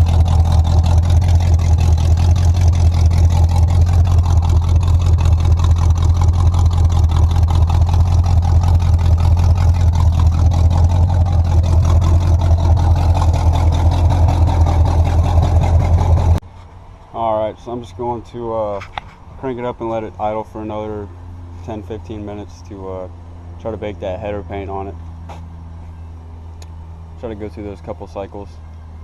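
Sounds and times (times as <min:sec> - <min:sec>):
car engine exhaust pulsing: 0:00.0 - 0:16.4.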